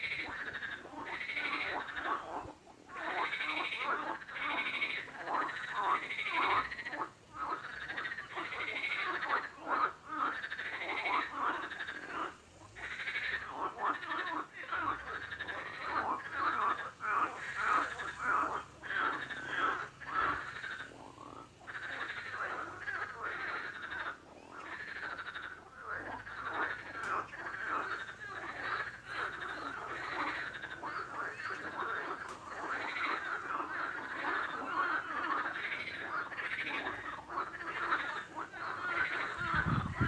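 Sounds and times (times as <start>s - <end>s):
frogs croaking: 0.0s - 40.0s.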